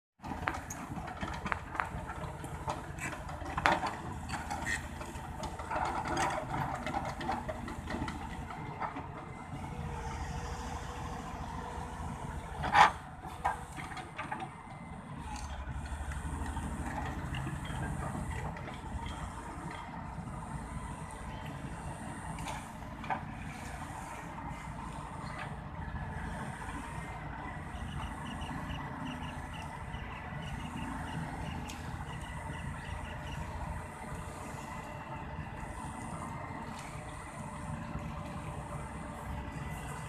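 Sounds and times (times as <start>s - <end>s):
engine running: 0.2s - 40.0s
clanks and clicks: 0.3s - 9.1s.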